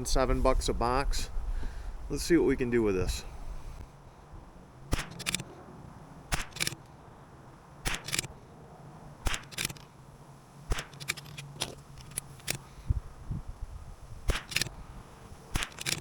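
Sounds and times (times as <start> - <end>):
rifle bolt clicks: 4.9 - 5.5, 6.3 - 7.0, 7.9 - 8.4, 9.3 - 9.9, 10.7 - 12.6, 14.3 - 14.8, 15.5 - 16.0
rifle shots: 4.9 - 5.5, 6.3 - 6.8, 7.8 - 8.4, 9.2 - 9.8, 10.7 - 12.6, 14.2 - 14.8, 15.4 - 16.0.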